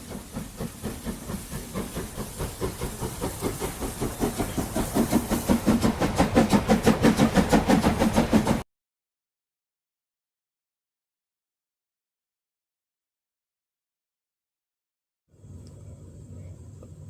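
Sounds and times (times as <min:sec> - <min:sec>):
steam locomotive chuffing: 0:00.0 - 0:08.6.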